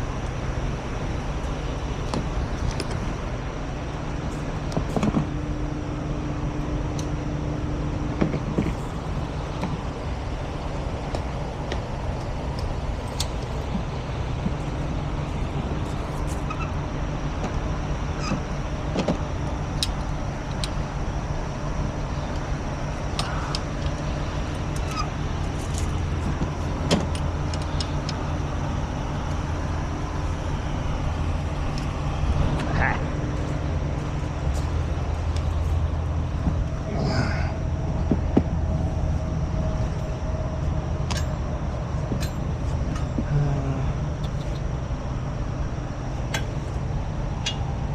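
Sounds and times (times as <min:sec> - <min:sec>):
diesel truck engine running: 0:00.0 - 0:47.9
sharp clicks and knocks: 0:04.7 - 0:05.4, 0:23.1 - 0:28.2, 0:46.3 - 0:46.8.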